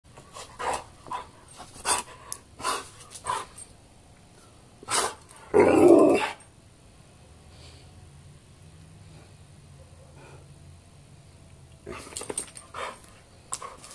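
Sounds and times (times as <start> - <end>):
dog barking and growling: 4.9 - 6.4.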